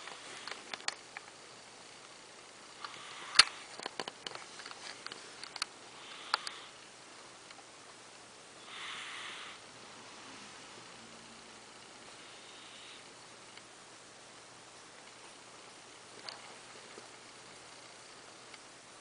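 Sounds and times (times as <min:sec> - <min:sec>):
cat snoring: 0:02.8 - 0:03.7, 0:06.0 - 0:06.8, 0:08.6 - 0:13.2
small sharp clicks: 0:02.8 - 0:06.6.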